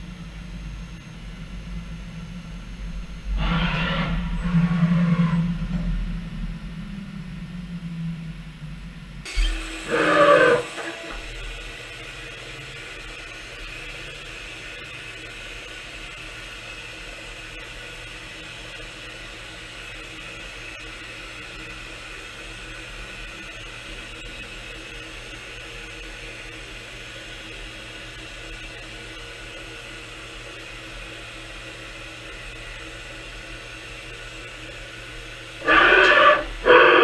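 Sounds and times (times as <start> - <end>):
machine humming: 0.0 - 15.7, 32.0 - 37.0.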